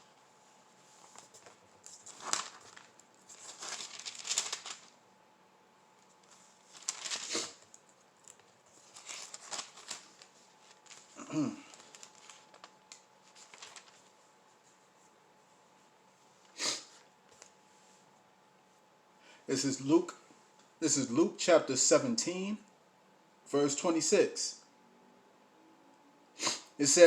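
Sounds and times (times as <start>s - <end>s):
paper pages rustling: 0.9s - 5.0s, 6.0s - 14.8s.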